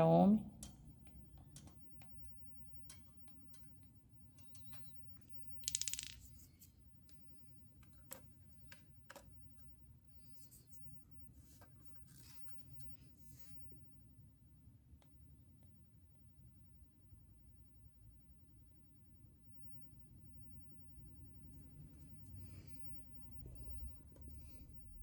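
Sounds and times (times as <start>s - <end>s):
faint clicks and handling noises: 0.6s - 13.6s.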